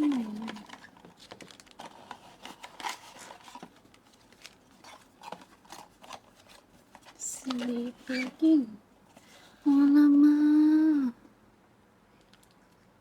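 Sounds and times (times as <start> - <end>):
small clicks and crackles: 0.0 - 8.5, 12.2 - 12.8
packaging rustling: 0.0 - 8.6.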